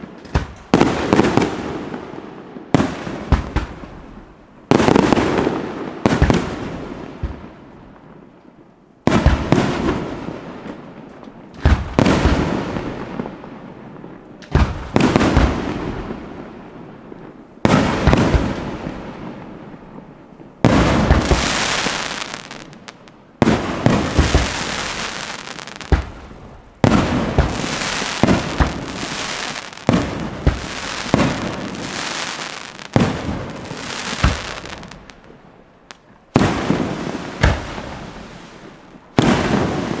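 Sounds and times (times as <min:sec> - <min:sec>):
fireworks crackling: 0:00.0 - 0:06.6, 0:17.6 - 0:40.0.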